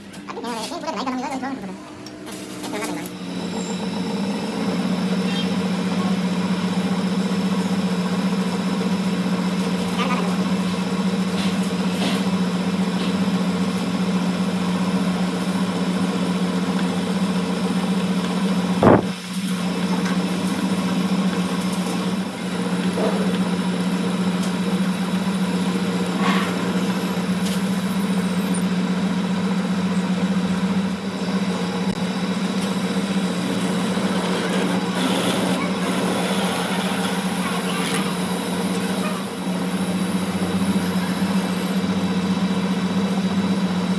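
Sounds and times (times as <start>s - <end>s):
machine hum: 13.6s - 43.9s
sharp knock: 18.8s - 19.2s.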